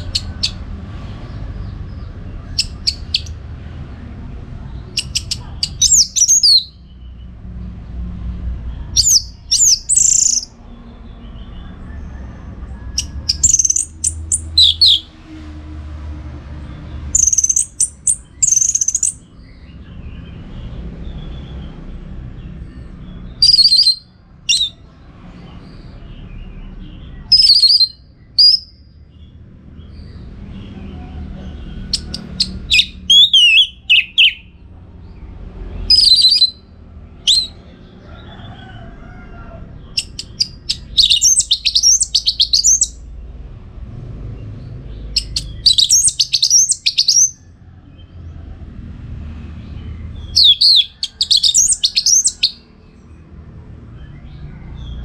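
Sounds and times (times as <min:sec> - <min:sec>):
thrush singing: 0:11.9 - 0:15.3, 0:32.0 - 0:34.6, 0:40.0 - 0:43.0, 0:50.3 - 0:52.6.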